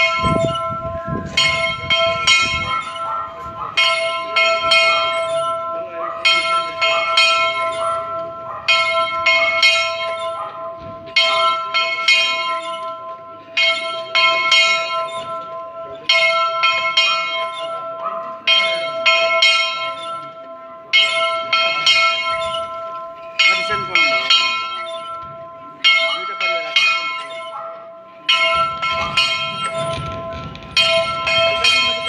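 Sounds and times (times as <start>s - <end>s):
church bell ringing: 0.0s - 32.0s.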